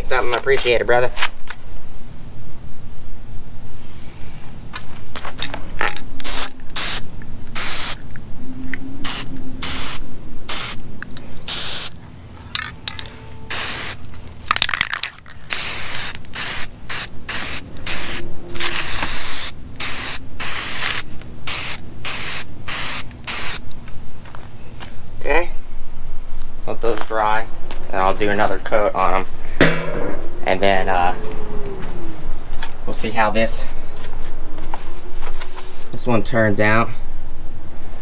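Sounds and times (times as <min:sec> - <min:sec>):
spray can hissing: 0:06.2 - 0:08.0, 0:09.0 - 0:10.8, 0:11.4 - 0:12.0, 0:13.5 - 0:14.0, 0:15.4 - 0:23.6.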